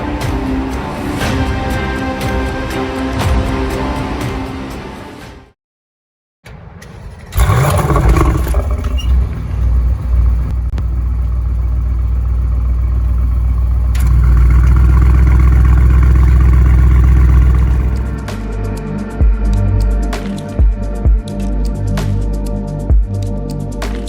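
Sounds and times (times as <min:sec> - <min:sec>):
car engine starting and idling: 0:06.9 - 0:18.4.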